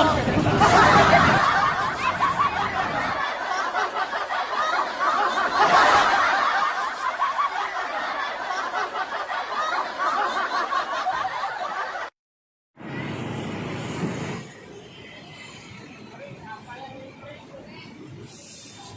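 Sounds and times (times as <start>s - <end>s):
people laughing: 0.0s - 12.1s.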